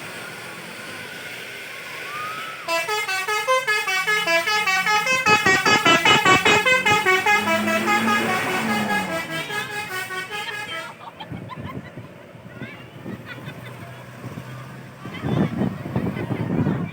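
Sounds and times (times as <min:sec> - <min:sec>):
musical bus horn playing a tune: 0:02.7 - 0:11.1.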